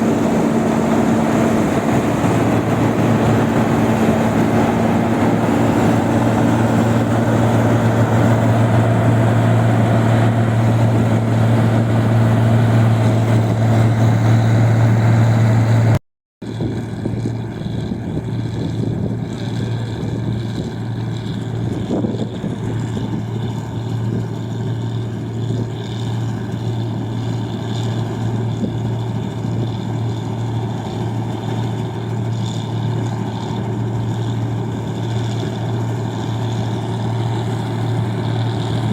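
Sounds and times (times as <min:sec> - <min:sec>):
machine engine humming: 0:00.0 - 0:16.0, 0:16.6 - 0:38.9.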